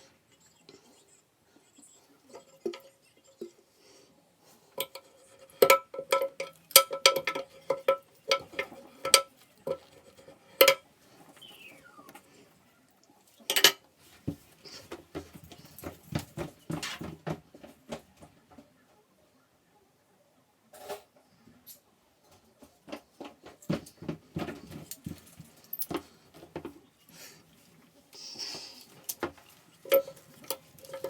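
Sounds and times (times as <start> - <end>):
hard objects clinking: 4.8 - 10.8, 28.8 - 31.0.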